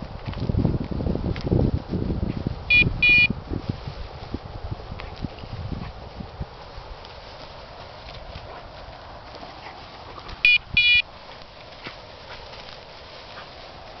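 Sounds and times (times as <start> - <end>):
faint steady rustling: 0.0 - 14.0
short electronic beeps: 2.7 - 3.3, 10.4 - 11.1.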